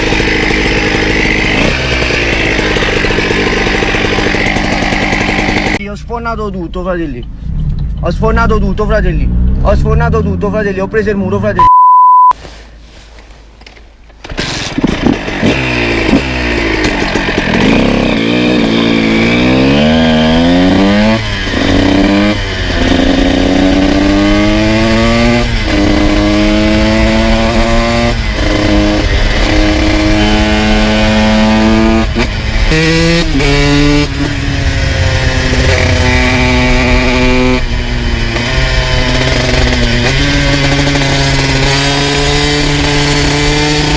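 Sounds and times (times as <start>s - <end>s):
motorcycle engine revving: 0.0s - 5.9s, 7.4s - 10.9s, 14.2s - 43.9s
low wind rumble: 6.3s - 11.6s, 22.4s - 42.2s.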